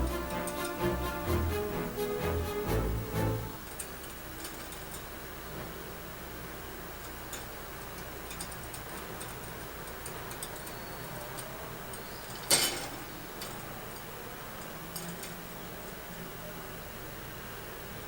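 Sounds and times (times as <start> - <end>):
light clicks and taps: 7.0 - 15.4.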